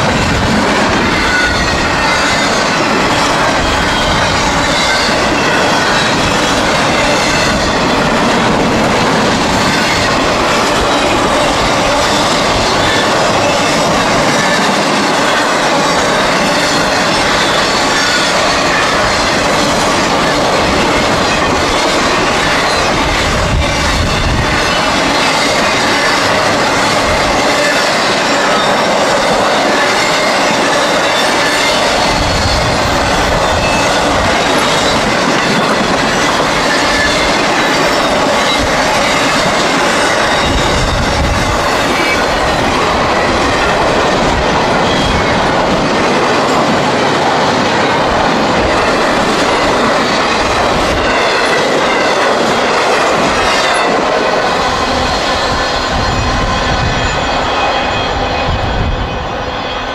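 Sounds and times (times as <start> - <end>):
clickety-clack over rail joints: 0.0 - 58.9
steel wheels rushing on rail: 0.0 - 59.9
wheel squeal: 9.6 - 43.9, 44.7 - 45.4.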